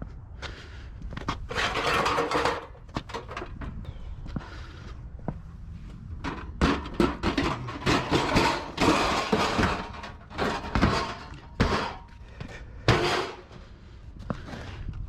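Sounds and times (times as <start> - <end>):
metal scraping: 1.4 - 3.9, 6.1 - 13.8
metal knocks and clunks: 1.5 - 3.9, 6.2 - 13.6.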